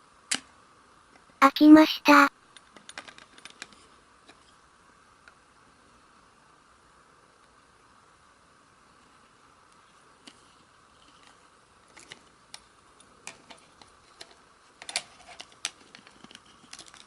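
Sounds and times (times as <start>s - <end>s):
faint steady hiss: 0.0s - 17.0s.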